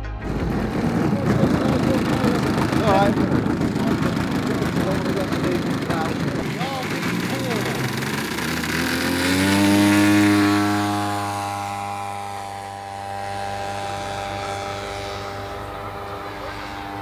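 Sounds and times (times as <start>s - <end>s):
model aircraft propeller engine flyby: 0.0s - 17.0s.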